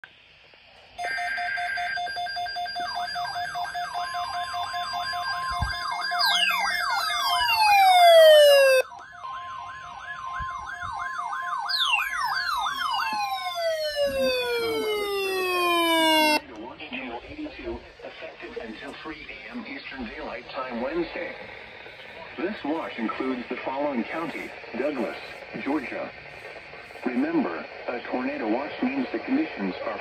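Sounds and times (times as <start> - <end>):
warbling siren sweep: 4.7 - 16.4
long falling whistles: 5.3 - 8.8, 11.6 - 16.4
electronic alert tones: 5.7 - 8.8, 11.8 - 16.4.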